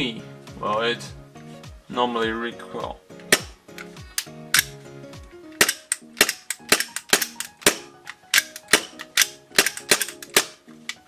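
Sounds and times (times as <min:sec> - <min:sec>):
background music: 0:00.0 - 0:11.0
pistol slide clacking: 0:03.2 - 0:04.8, 0:05.5 - 0:11.0
toy pistol shots: 0:03.3 - 0:03.6, 0:04.2 - 0:04.8, 0:05.6 - 0:10.6.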